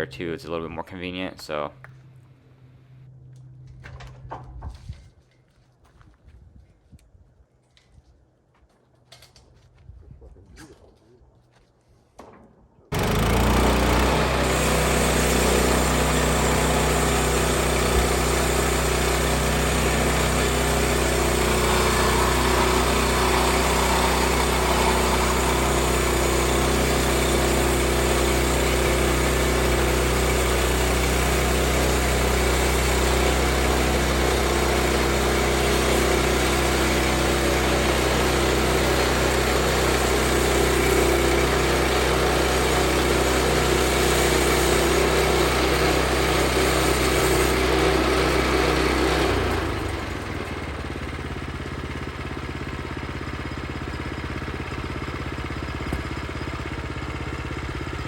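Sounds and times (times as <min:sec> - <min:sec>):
small gasoline engine running: 0:12.9 - 0:58.0.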